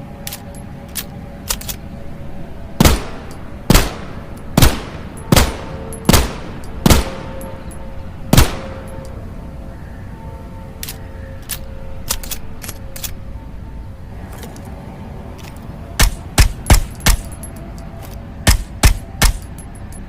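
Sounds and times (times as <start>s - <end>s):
pistol gunshots: 2.8s - 7.4s, 8.3s - 8.8s, 16.0s - 17.4s, 18.4s - 19.5s.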